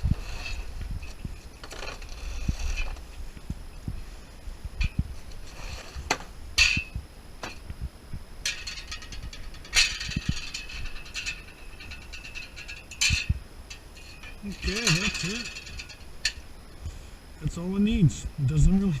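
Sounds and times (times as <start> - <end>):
metal parts clicking and rattling: 0.0 - 3.1, 4.8 - 7.6, 8.4 - 16.4.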